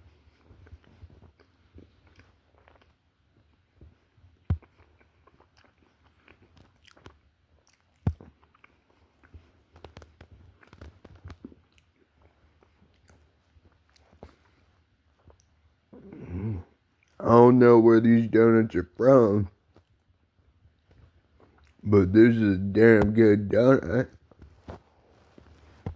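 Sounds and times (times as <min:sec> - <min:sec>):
chewing soft crunches: 0:00.0 - 0:17.2, 0:19.6 - 0:21.9.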